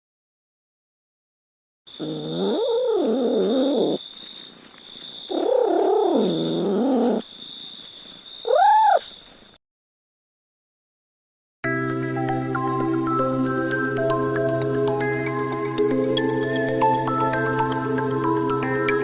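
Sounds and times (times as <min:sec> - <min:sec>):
cat meowing: 0:02.0 - 0:04.0, 0:05.3 - 0:07.2, 0:08.4 - 0:09.1
cat yowling: 0:02.0 - 0:04.0, 0:05.3 - 0:07.2, 0:08.4 - 0:09.1.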